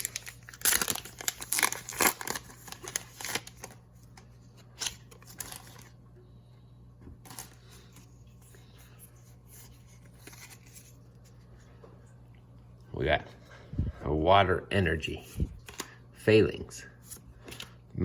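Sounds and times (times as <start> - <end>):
foil pack crinkling: 0.0 - 6.0
soft clicks of card handling: 15.6 - 16.0.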